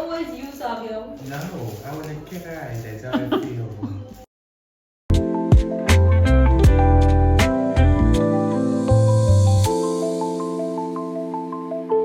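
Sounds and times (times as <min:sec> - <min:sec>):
background music with sharp beats: 0:05.1 - 0:10.6.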